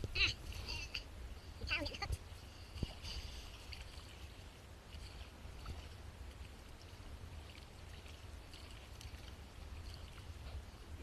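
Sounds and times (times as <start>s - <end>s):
steady low rumble: 0.0s - 11.0s
water sloshing and trickling: 0.0s - 11.0s.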